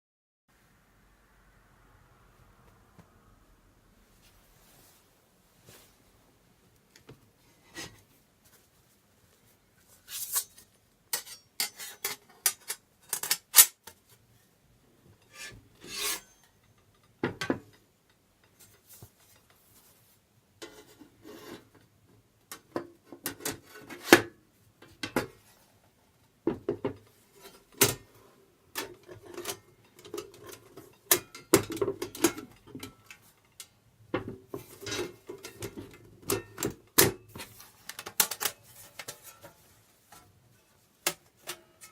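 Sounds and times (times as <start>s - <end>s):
metal parts scraping and sliding: 10.0s - 13.8s, 15.2s - 16.4s, 37.3s - 40.3s.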